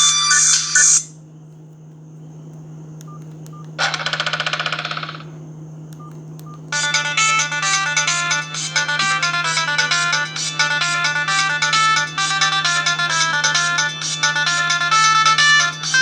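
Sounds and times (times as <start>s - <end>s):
steady low hum: 0.0s - 16.0s
phone ringtone melody: 3.8s - 5.2s, 6.7s - 16.0s
buzzy tone: 6.7s - 16.0s.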